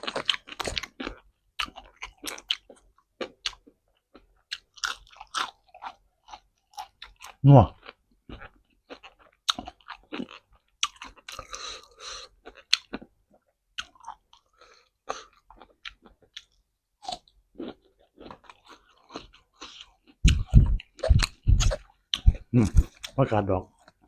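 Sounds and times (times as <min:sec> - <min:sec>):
person chewing crunchy food: 0:00.0 - 0:24.0
wet mouth sounds: 0:19.2 - 0:23.2.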